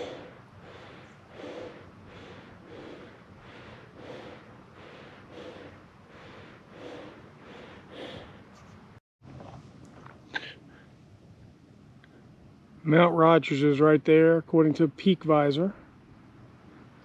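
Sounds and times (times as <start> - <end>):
man breathing heavily: 0.0 - 8.6.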